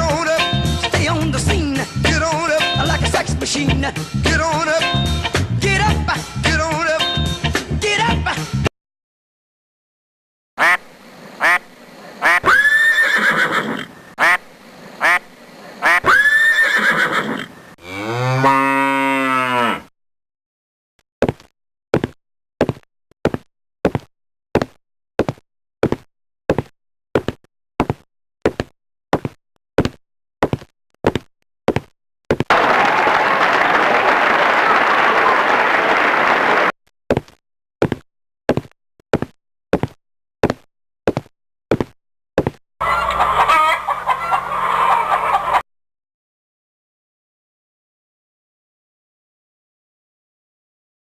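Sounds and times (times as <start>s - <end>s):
chicken clucking and squawking: 10.6s - 17.5s, 42.8s - 45.6s.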